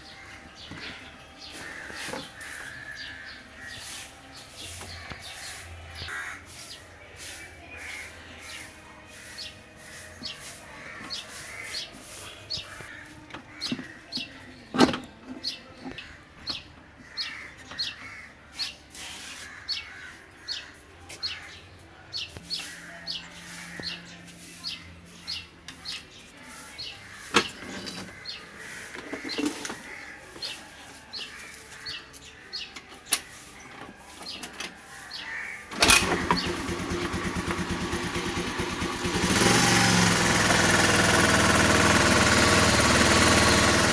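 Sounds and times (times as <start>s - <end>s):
small birds chirping: 0.0s - 43.9s
scooter engine running: 35.7s - 43.9s.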